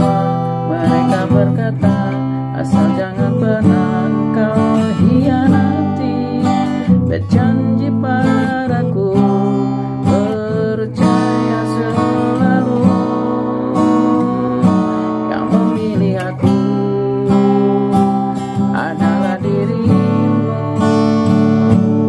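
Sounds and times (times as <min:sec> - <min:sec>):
acoustic guitar strumming chords: 0:00.0 - 0:22.0.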